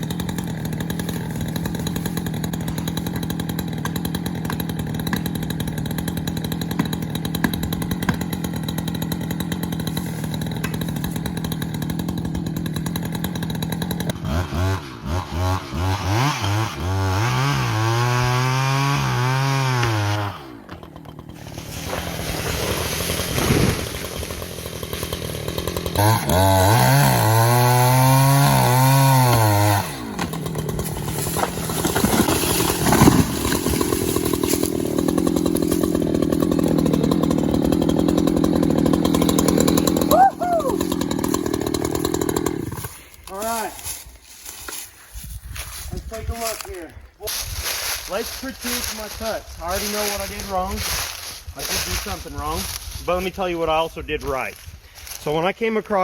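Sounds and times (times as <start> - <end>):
chainsaw engine revving: 0.0 - 44.8, 46.4 - 53.0.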